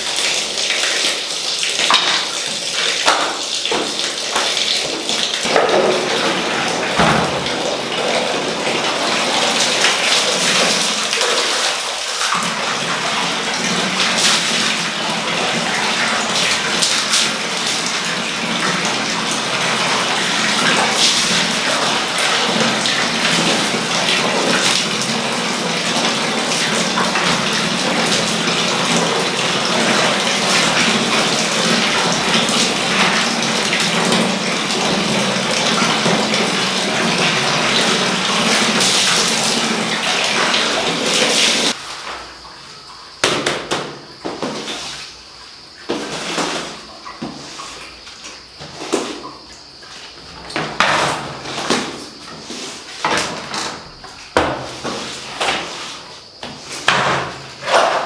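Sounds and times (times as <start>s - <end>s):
water running and splashing: 0.0s - 43.2s
knocks: 7.0s - 7.8s.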